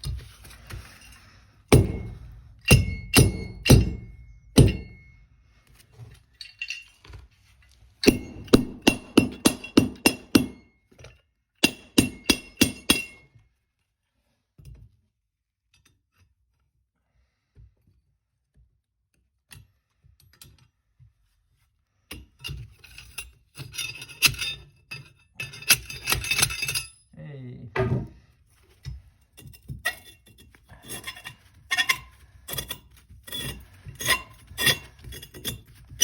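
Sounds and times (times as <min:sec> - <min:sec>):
hammer striking chisel on metal: 0:01.7 - 0:05.2, 0:08.0 - 0:10.7, 0:11.6 - 0:13.2
clinking and clattering: 0:06.3 - 0:07.2, 0:22.8 - 0:27.0.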